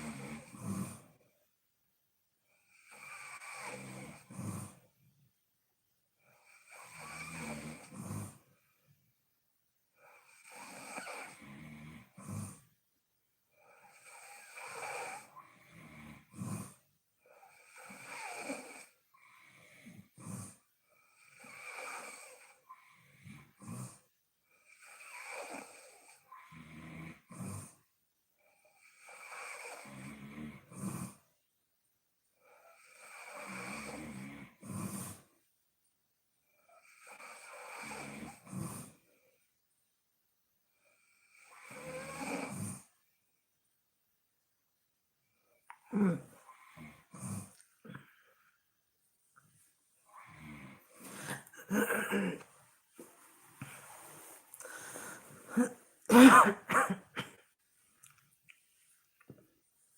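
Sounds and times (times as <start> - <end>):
woman snoring heavily: 0.0 - 1.2, 2.6 - 4.8, 6.3 - 8.4, 10.0 - 12.6, 13.6 - 24.0, 24.6 - 27.8, 28.6 - 31.3, 32.4 - 35.3, 36.7 - 39.1, 40.8 - 42.9, 45.8 - 48.2, 50.1 - 52.6, 53.7 - 57.3.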